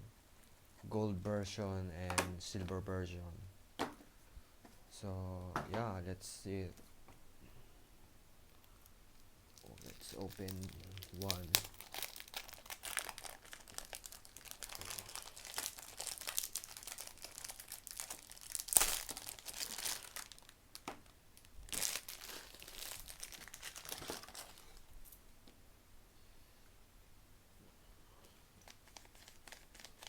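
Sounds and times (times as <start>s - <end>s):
plastic wrapping crinkling: 8.6s - 25.2s, 28.6s - 30.0s
plastic wrapping ripping: 9.5s - 24.8s, 28.6s - 30.0s.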